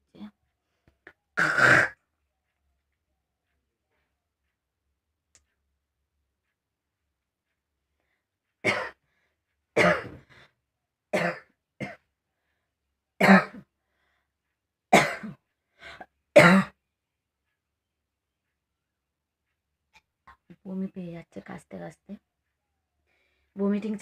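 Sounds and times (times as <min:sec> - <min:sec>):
person coughing hard: 0:01.4 - 0:02.0, 0:08.6 - 0:09.0, 0:09.8 - 0:10.2, 0:11.1 - 0:12.0, 0:13.2 - 0:13.6, 0:14.9 - 0:15.4, 0:16.4 - 0:16.8.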